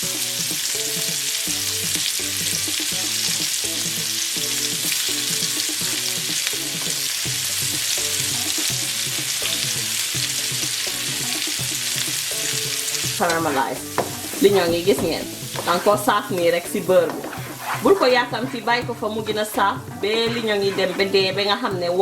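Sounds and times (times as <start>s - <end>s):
onions sizzling in a pan: 0.0s - 18.5s
background music: 0.0s - 22.0s.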